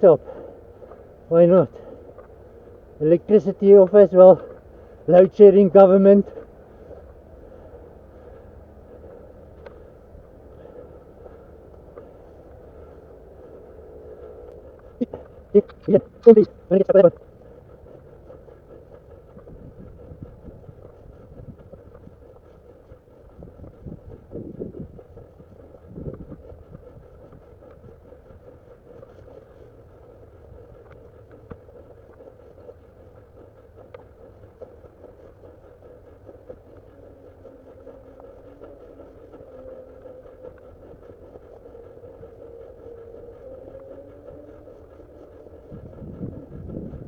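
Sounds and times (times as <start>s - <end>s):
steady wavering hum: 0.0s - 47.0s
wind buffeting microphone: 0.0s - 47.0s.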